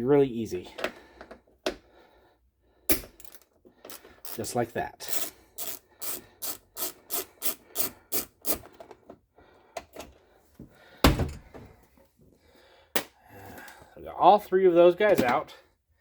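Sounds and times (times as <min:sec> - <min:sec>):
tool rasping on screws: 0:03.2 - 0:09.0
heavy thud: 0:11.0 - 0:11.6.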